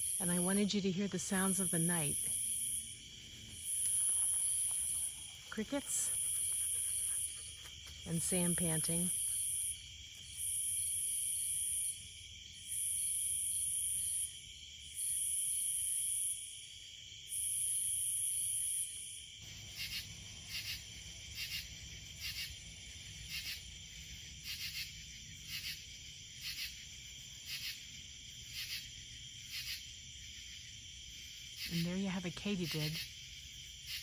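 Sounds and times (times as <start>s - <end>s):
crickets trilling: 0.0s - 34.0s
high-pitched insect buzz: 17.4s - 20.8s, 21.4s - 22.6s
katydid raspy calling: 19.7s - 22.6s, 23.2s - 23.7s, 24.4s - 25.8s, 26.4s - 26.8s, 28.5s - 28.9s, 31.6s - 33.2s.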